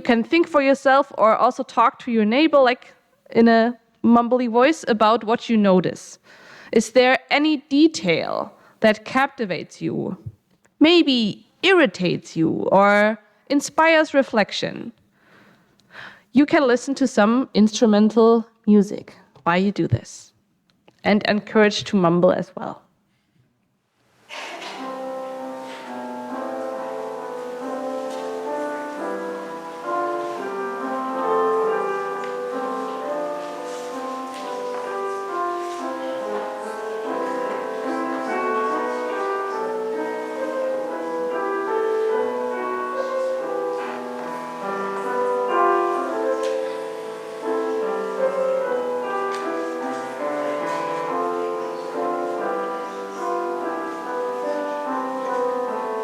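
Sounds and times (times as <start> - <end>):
piano music: 0.0 - 0.6, 24.5 - 56.0.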